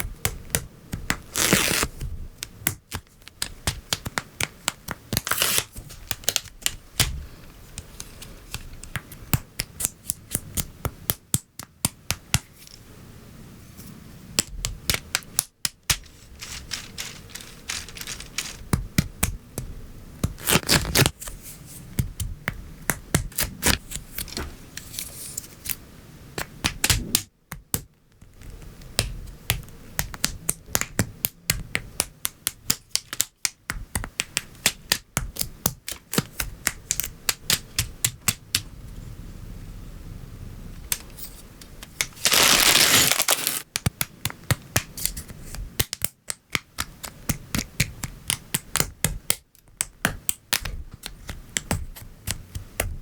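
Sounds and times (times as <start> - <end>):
plastic pieces snapping together: 0.2 - 7.1, 14.4 - 19.4
loud plastic rattle: 16.0 - 18.7.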